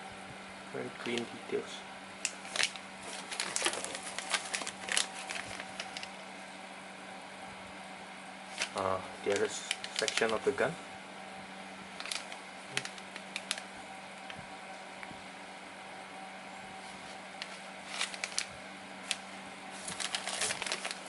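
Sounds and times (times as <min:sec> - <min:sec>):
steady low hum: 0:00.0 - 0:21.0
plastic bags crinkling: 0:02.2 - 0:06.2, 0:08.5 - 0:10.6, 0:11.9 - 0:14.3, 0:17.4 - 0:21.0.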